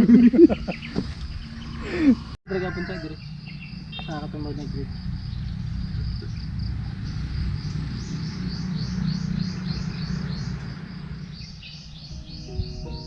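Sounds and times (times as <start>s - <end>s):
high chirping call: 11.8s - 13.0s.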